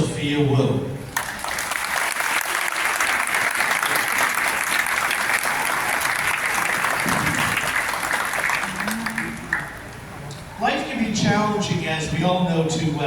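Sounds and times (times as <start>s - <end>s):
audience clapping: 1.1s - 10.0s.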